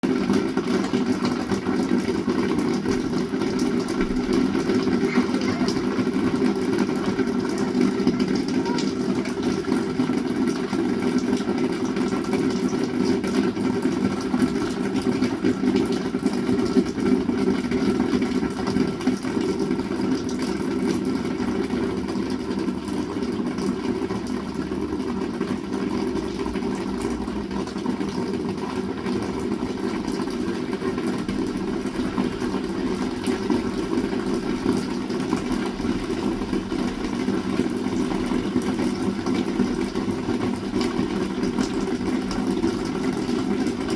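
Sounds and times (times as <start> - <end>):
heavy rain falling: 0.2 - 10.8.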